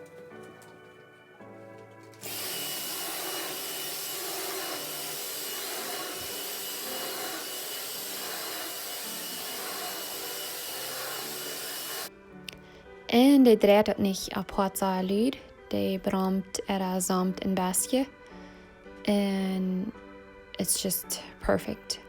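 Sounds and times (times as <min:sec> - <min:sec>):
soft background music: 0:00.0 - 0:22.0
stick vacuum cleaner running: 0:02.1 - 0:12.1.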